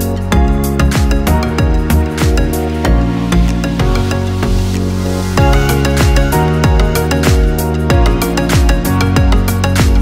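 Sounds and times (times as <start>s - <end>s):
kick drum beat: 0.4s - 2.5s, 5.4s - 10.0s.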